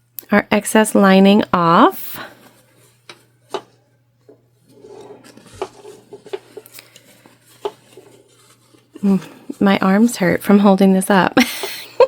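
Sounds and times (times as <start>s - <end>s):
fabric rustling: 4.6s - 10.3s.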